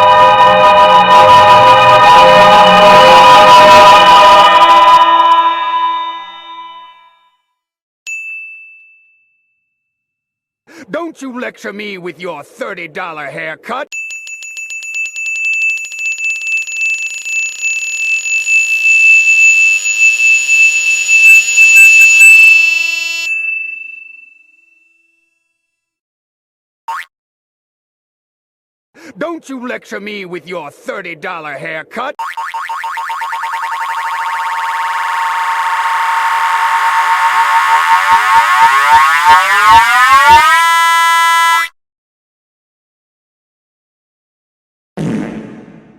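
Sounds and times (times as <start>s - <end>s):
high-pitched electronic alarm tone: 0.0s - 7.2s, 16.7s - 24.2s, 32.2s - 41.7s.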